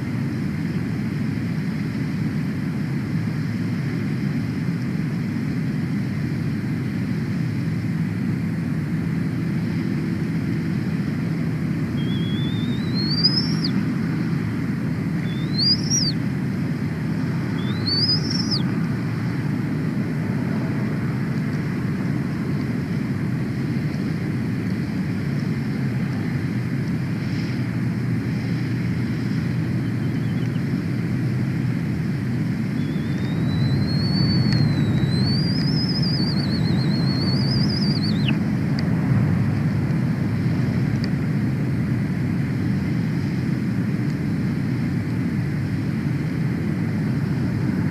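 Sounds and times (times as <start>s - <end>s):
low steady rumble: 0.0s - 47.9s
eagle whistling calls: 11.7s - 19.1s, 29.4s - 31.0s, 32.1s - 38.5s.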